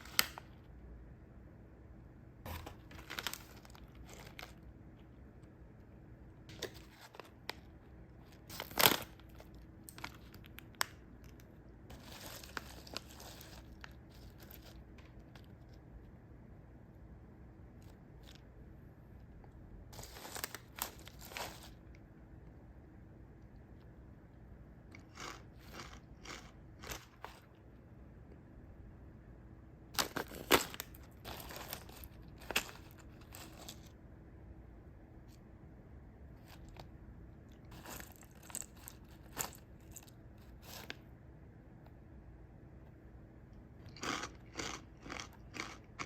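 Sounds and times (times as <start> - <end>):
plastic packet ripping: 2.5 - 4.6, 8.3 - 14.8, 30.0 - 33.9
plastic packaging crinkling: 2.5 - 4.7, 6.5 - 15.5, 20.0 - 21.8, 30.0 - 33.9, 37.7 - 41.0.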